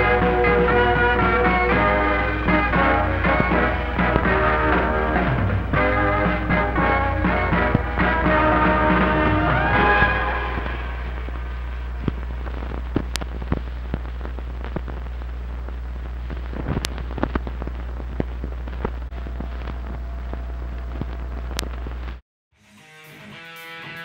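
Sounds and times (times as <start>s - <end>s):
tape hiss with crackles and pops: 0.0s - 22.2s
low electrical hum: 10.1s - 22.2s.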